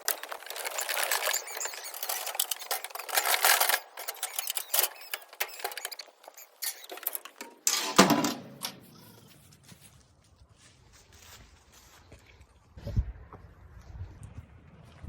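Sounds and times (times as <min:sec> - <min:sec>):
squeaking: 0:00.0 - 0:09.4.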